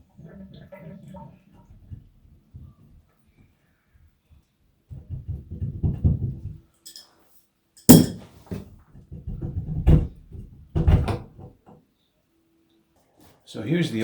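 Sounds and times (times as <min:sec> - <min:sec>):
metal rattle: 0:07.9 - 0:08.2
metal tools clanking: 0:07.9 - 0:08.2
sharp metal strike: 0:07.9 - 0:08.2.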